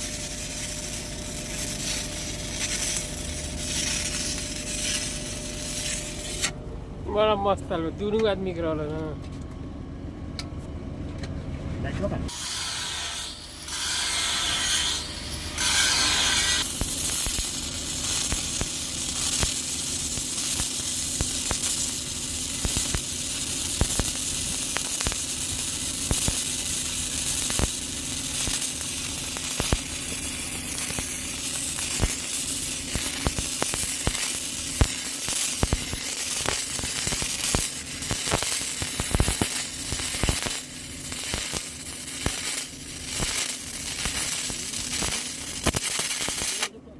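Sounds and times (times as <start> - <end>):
welding arc crackling and popping: 0.0 - 6.6, 12.3 - 46.8
low hum: 0.0 - 12.3.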